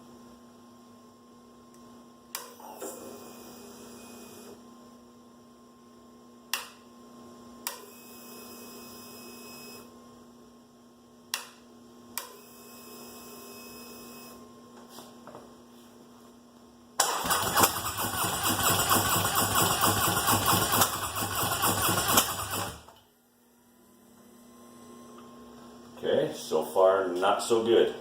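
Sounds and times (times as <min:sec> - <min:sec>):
fuel pump whirring: 0:17.0 - 0:22.9.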